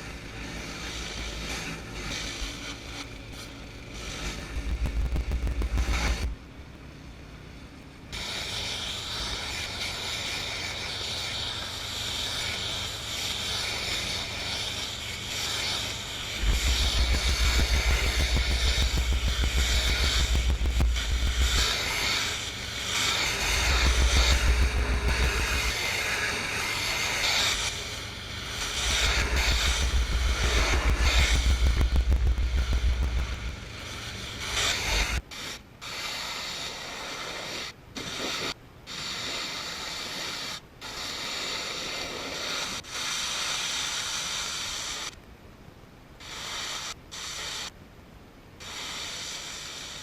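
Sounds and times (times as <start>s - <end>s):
pressure washer engine: 0.0s - 6.4s, 8.1s - 38.4s
pressure washer spray hiss: 0.0s - 6.4s, 8.1s - 45.2s, 46.2s - 47.8s, 48.6s - 50.0s.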